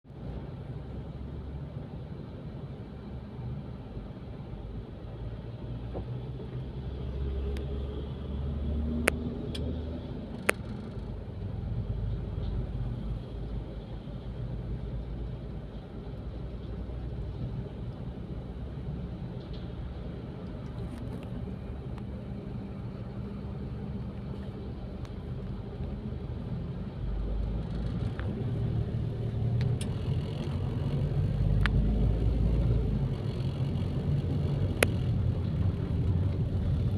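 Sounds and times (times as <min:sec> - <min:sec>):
diesel truck engine rumbling: 0:00.2 - 0:36.9.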